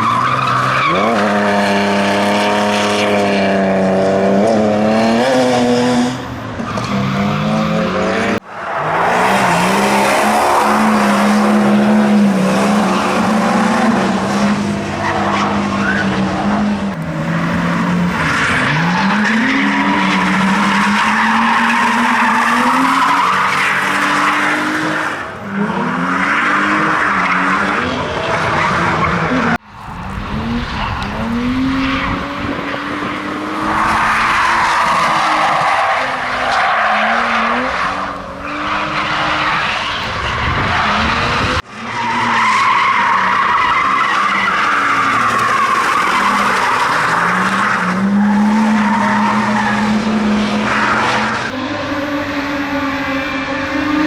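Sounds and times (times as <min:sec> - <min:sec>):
car engine revving hard: 0:09.1 - 0:41.7.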